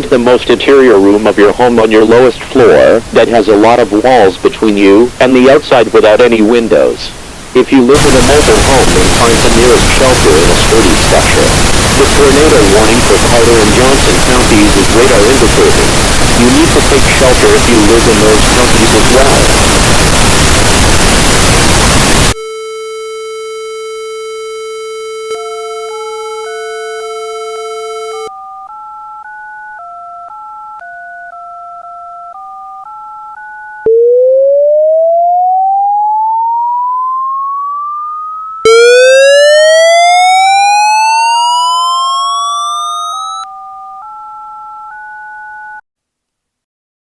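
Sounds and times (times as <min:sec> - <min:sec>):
steady buzzing tone: 0:08.0 - 0:28.7, 0:29.8 - 0:43.5
touch-tone beeps: 0:22.4 - 0:39.3, 0:42.0 - 0:45.8
rising siren-like sweep: 0:25.0 - 0:28.3, 0:33.8 - 0:43.5.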